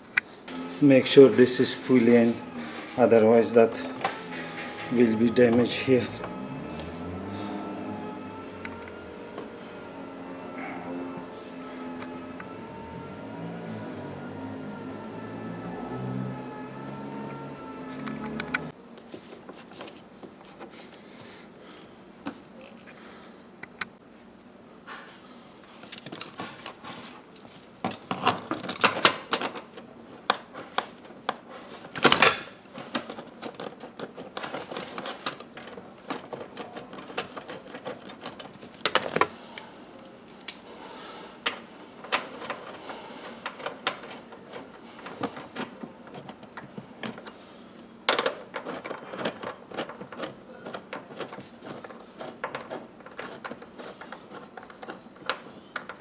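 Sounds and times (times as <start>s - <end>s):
hand tools clicking and rattling: 0.5s - 7.0s, 25.8s - 39.4s, 41.4s - 56.0s.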